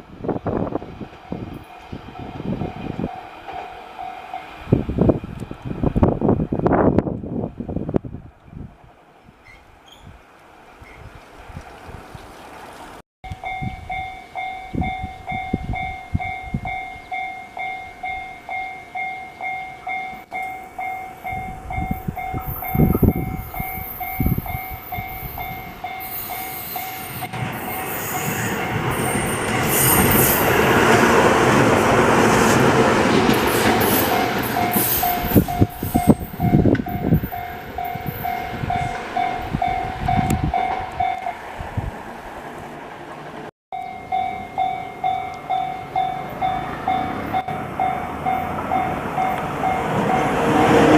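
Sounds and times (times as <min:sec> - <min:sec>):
electric train rumbling past: 0:00.0 - 0:50.9
level-crossing alarm dinging: 0:13.4 - 0:30.5, 0:33.4 - 0:41.4, 0:43.8 - 0:50.4
train wheels clacking: 0:17.6 - 0:41.4.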